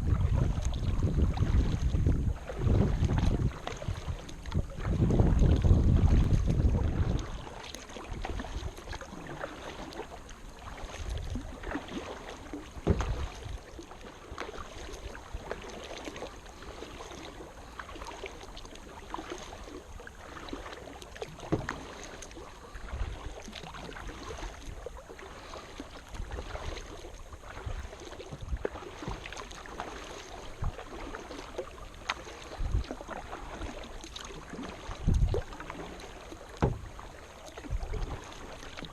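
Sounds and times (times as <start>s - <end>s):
wind buffeting microphone: 0.0s - 8.8s, 34.8s - 35.6s
paddle splashing in water: 0.0s - 38.9s.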